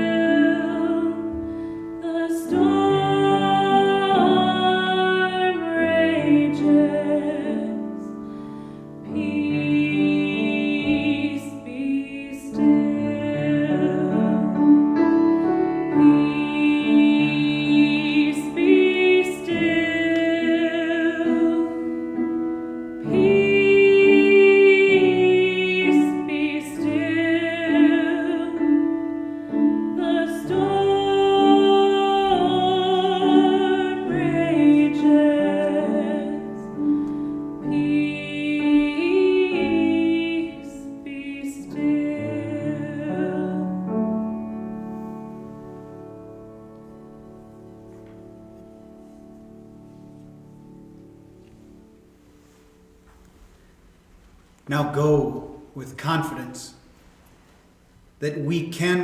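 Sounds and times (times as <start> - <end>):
person singing with vibrato: 0.0 - 44.2
piano accompaniment: 0.0 - 57.1.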